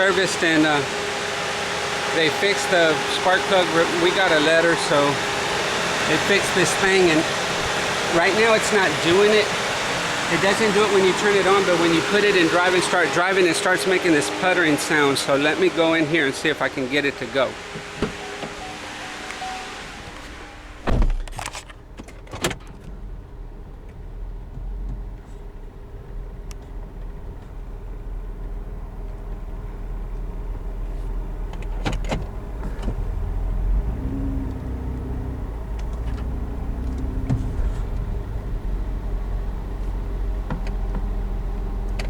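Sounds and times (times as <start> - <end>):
car engine and road noise: 0.0 - 42.0
car door shutting: 17.7 - 22.9, 31.5 - 33.2, 35.7 - 38.4, 39.8 - 42.0.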